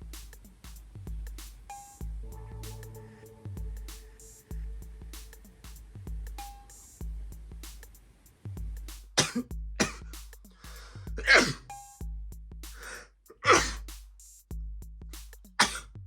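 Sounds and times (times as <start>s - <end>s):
background music with steady beat: 0.0s - 16.0s
man sneezing: 11.2s - 11.6s, 12.8s - 13.9s, 15.6s - 15.9s.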